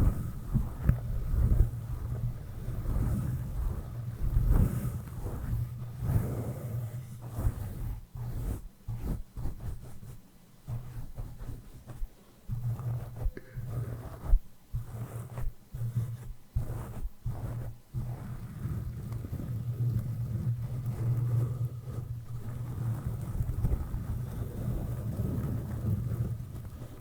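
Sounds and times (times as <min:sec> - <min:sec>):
brush swishing on microphone: 0:00.0 - 0:18.4.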